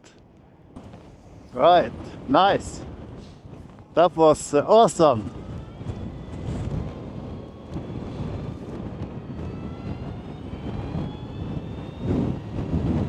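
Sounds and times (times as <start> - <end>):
wind buffeting microphone: 0.2 - 13.0
electric motor whine: 4.8 - 13.0.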